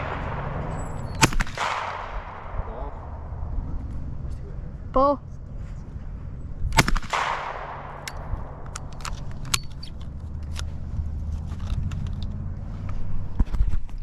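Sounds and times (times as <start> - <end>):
shotgun cracks with echo: 0.0 - 3.4, 6.7 - 9.4.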